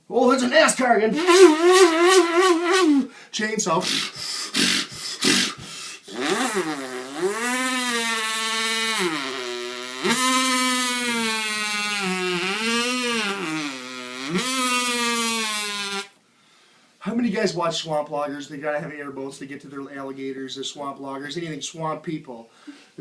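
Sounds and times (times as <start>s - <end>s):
man imitating a chainsaw: 1.1s - 3.1s, 3.7s - 16.1s.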